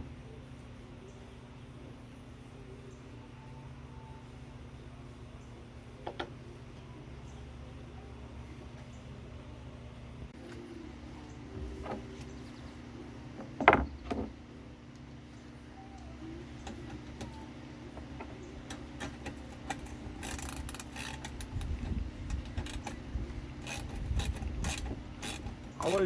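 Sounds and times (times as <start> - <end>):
ratchet wrench clicking: 19.4 - 23.0, 23.6 - 26.0.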